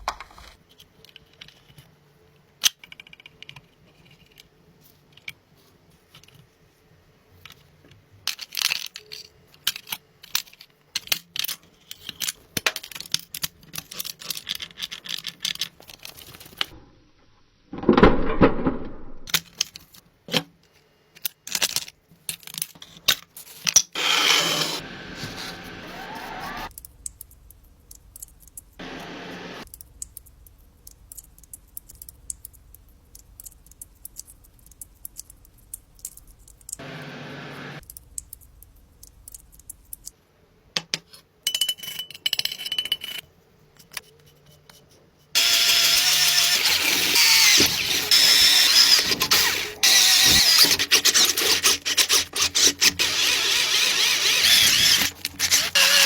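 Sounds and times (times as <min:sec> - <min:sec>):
clicks and taps of small parts: 0:00.0 - 0:04.5, 0:29.6 - 0:36.8, 0:37.8 - 0:40.2
steady scraping: 0:45.4 - 0:56.0.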